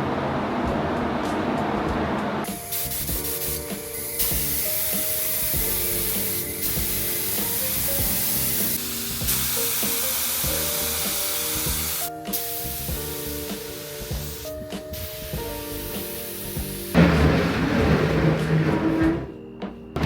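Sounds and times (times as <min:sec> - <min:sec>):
background music with melody: 0:00.5 - 0:20.0
steady hiss: 0:02.5 - 0:17.0.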